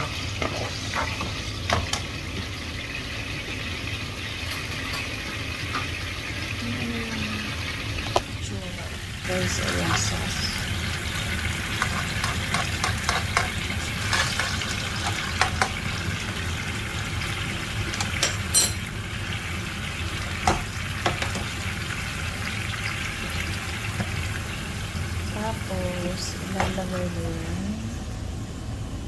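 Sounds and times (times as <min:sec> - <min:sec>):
sauce sizzling in a pan: 0:00.0 - 0:06.6, 0:07.3 - 0:27.2
utensil clinking against pan: 0:18.0 - 0:18.9.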